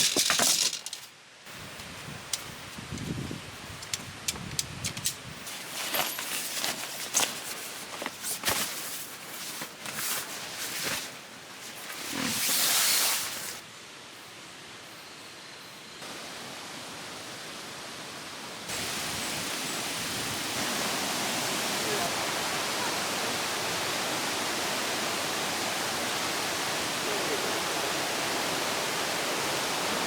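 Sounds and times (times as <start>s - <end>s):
clicks and rustling: 0.0s - 1.1s, 1.7s - 12.1s
stream rushing: 16.0s - 30.0s.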